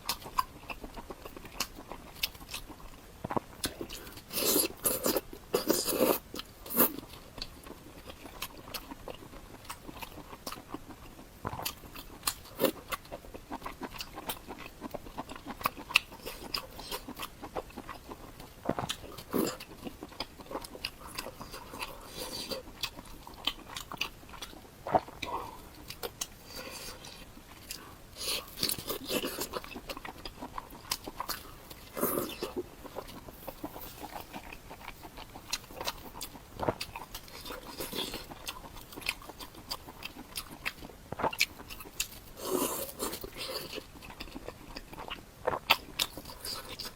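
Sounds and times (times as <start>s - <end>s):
person chewing crunchy food: 0.0s - 46.9s.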